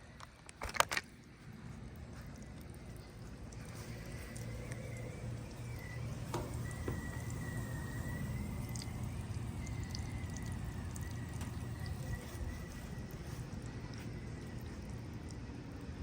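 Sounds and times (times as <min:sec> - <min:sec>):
heat pump humming: 0:00.0 - 0:16.0
small ticks: 0:00.2 - 0:12.3.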